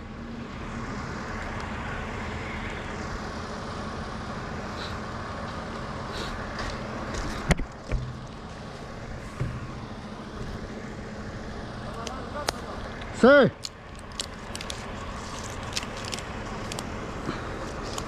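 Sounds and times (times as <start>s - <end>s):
sharp knocks: 7.5s - 8.3s.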